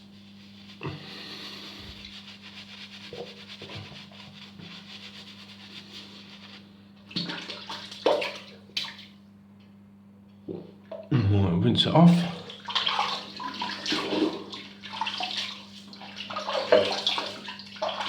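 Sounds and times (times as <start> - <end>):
water splashing: 7.1 - 9.1, 12.1 - 18.0.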